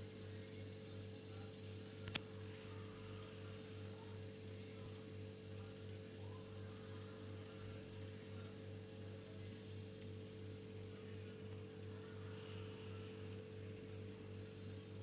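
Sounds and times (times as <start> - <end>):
electrical hum: 0.0 - 15.0
dog snoring: 2.9 - 3.9, 7.4 - 8.2, 12.3 - 13.4.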